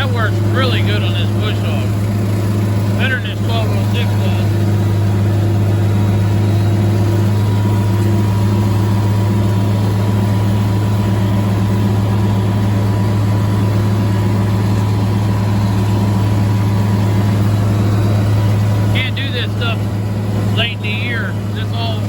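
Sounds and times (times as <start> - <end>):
tractor engine droning: 0.0 - 22.0.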